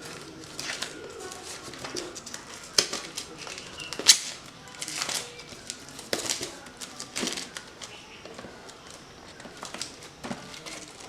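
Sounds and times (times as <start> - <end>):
packaging rustling and crinkling: 0.0 - 11.0
packaging snapping: 0.0 - 11.0.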